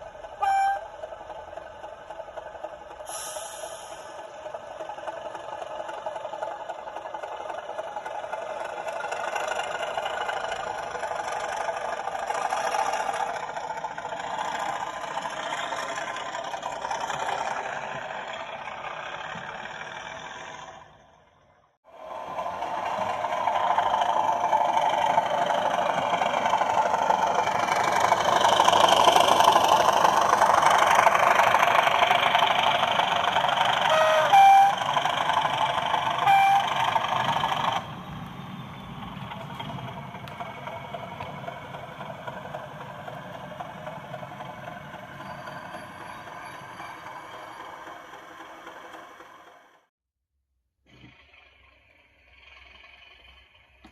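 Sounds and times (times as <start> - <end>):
model locomotive engine sound: 0.0 - 49.9
short horn notes: 0.4 - 0.9, 33.9 - 34.8, 36.2 - 36.8.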